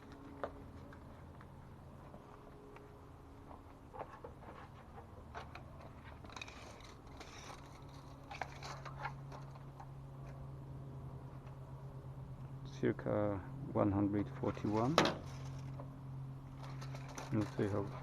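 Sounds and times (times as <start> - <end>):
steady low hum: 0.0 - 18.0
building material rustling and clicking: 3.5 - 10.4, 14.4 - 18.0.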